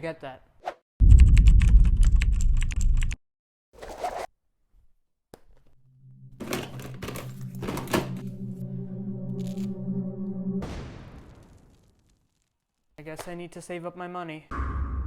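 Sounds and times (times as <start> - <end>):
background music with held tones: 5.8 - 10.6.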